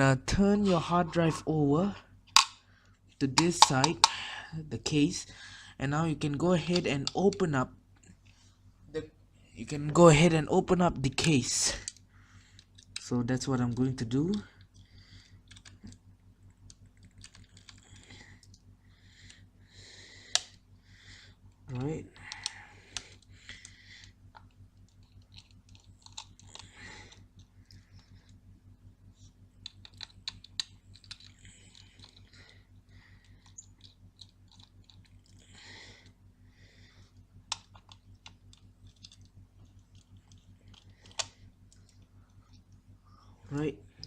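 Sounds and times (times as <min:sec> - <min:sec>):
low steady hum: 0:00.0 - 0:44.0
screwdriver clicks and ticks: 0:02.3 - 0:02.6.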